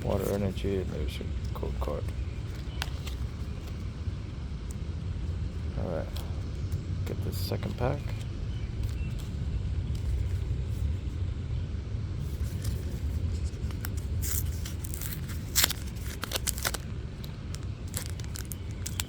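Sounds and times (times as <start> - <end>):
foil pack crinkling: 12.3 - 19.0.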